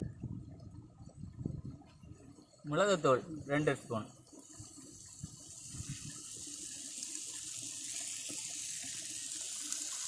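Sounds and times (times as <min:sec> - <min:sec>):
onions sizzling in oil: 0:04.4 - 0:10.0.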